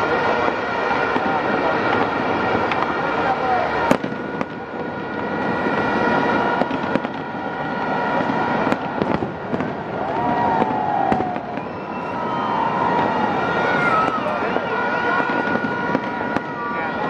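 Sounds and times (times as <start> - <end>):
fireworks bangs and crackles: 0.0 - 17.0
falling whistling tone: 10.1 - 15.2.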